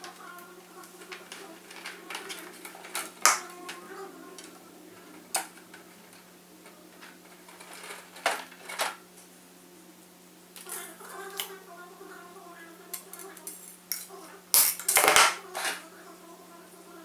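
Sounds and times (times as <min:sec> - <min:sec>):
small hard parts clicking: 0:00.0 - 0:09.0, 0:10.6 - 0:11.5, 0:12.9 - 0:15.8
faint steady hum: 0:00.0 - 0:17.0.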